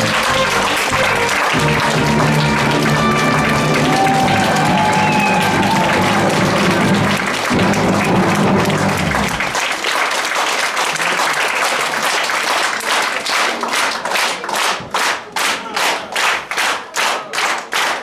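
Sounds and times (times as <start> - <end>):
orchestra closing sound: 0.0 - 9.8
audience applauding: 0.0 - 18.0
rhythmic clapping in unison: 0.0 - 18.0.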